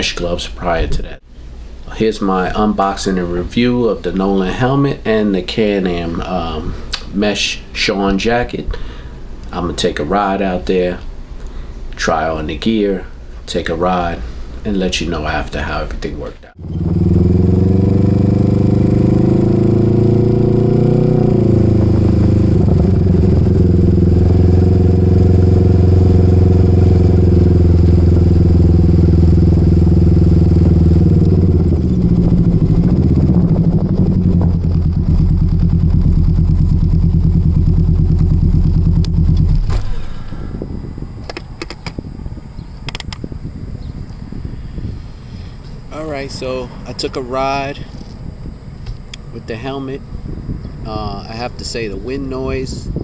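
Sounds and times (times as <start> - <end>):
three-wheeler engine running: 16.6 - 39.7
clicks: 42.9 - 43.2.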